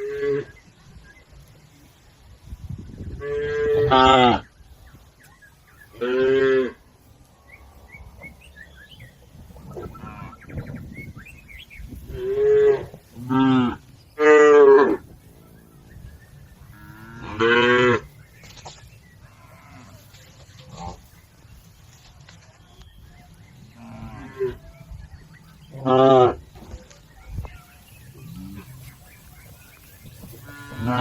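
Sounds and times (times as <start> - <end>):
cattle mooing: 30.4 - 31.0.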